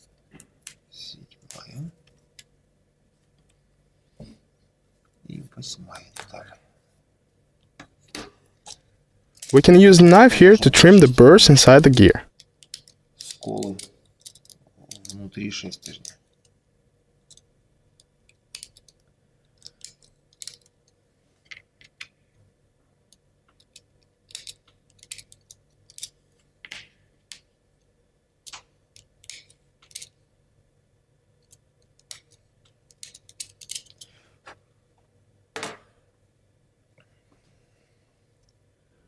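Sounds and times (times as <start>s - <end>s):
light clicks and taps of wood parts: 17.2s - 22.2s, 31.4s - 35.2s.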